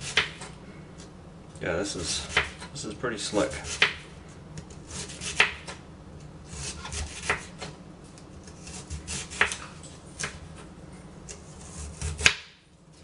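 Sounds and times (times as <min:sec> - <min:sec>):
blade rubbing through onion: 0:04.8 - 0:05.5, 0:06.4 - 0:07.6, 0:08.4 - 0:10.3, 0:11.3 - 0:12.3.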